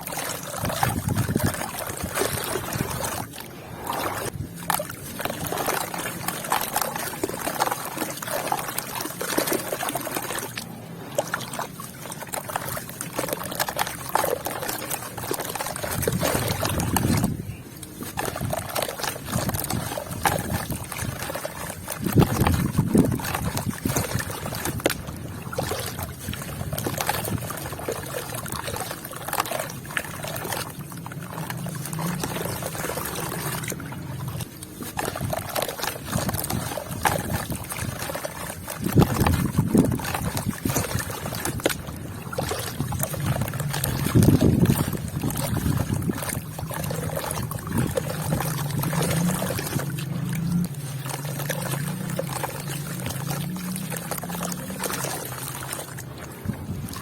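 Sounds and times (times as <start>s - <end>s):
water pouring onto dirt: 0.0s - 57.0s
wet dirt crumbling: 30.8s - 56.2s.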